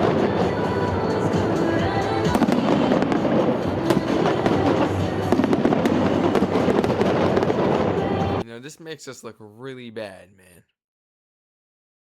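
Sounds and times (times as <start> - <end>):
music: 0.0 - 8.4
fireworks crackling and popping: 2.2 - 8.4.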